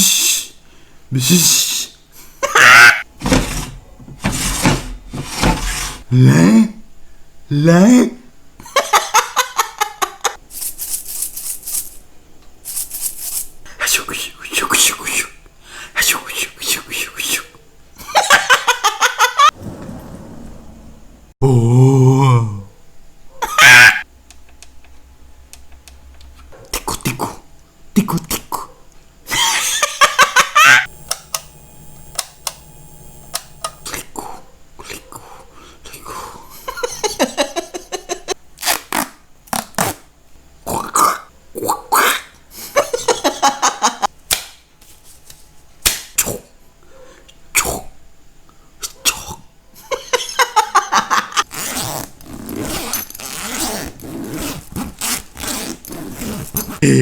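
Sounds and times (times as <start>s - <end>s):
burp-like throaty bursts: 56.8s - 57.0s.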